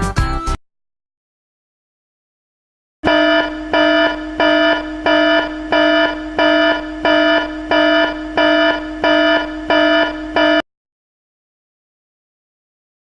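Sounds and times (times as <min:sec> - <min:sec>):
pulsing electronic alarm tone: 0:03.0 - 0:10.7.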